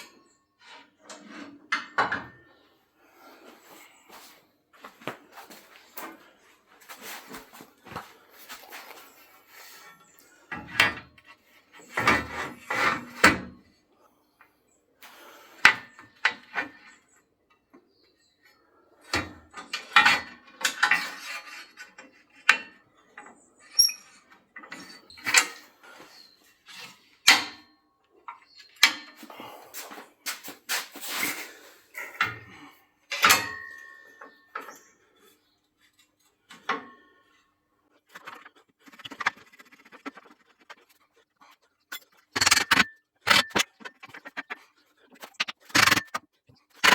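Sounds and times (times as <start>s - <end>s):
metal parts clanking: 41.9s - 44.5s, 45.1s - 46.2s.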